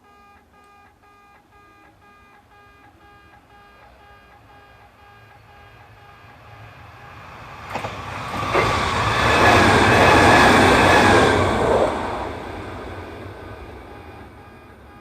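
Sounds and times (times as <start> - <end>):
crossing warning tones: 0.0 - 15.0
train wheels rumbling on rails: 5.2 - 15.0.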